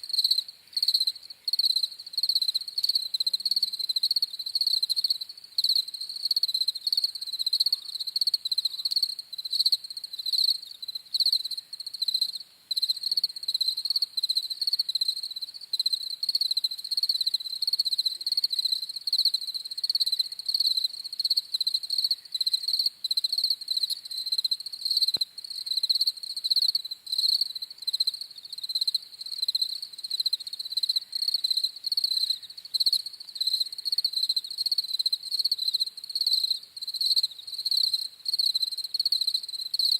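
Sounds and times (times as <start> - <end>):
crickets chirping: 0.0 - 39.9
faint click: 25.1 - 25.3.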